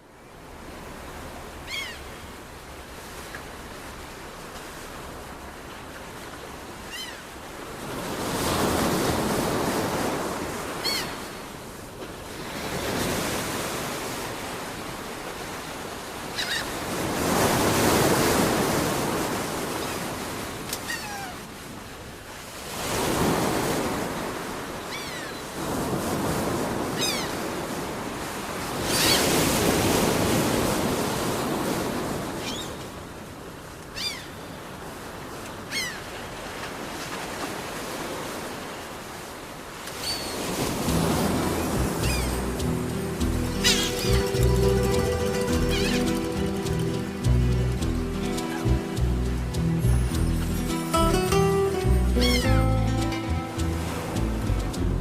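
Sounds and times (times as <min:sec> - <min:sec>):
waves washing in: 0:00.0 - 0:55.0
birds mewing calls: 0:10.8 - 0:11.2, 0:33.9 - 0:34.4, 0:41.4 - 0:47.3, 0:52.2 - 0:52.6.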